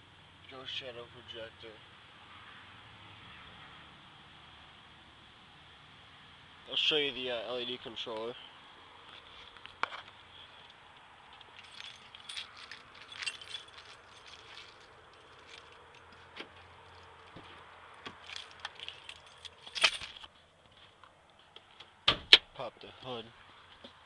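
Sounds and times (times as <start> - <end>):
small hard objects jingling: 11.3 - 17.3, 18.2 - 20.3.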